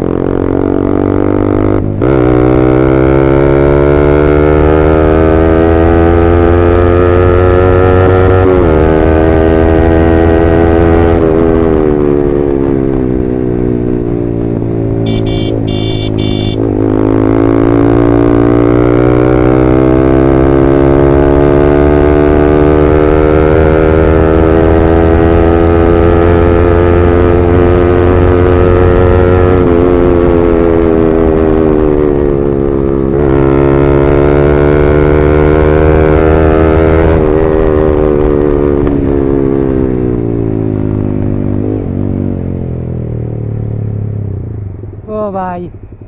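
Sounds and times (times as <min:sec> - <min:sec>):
motorcycle engine revving: 0:00.0 - 0:45.0
horn beeps: 0:15.1 - 0:16.7.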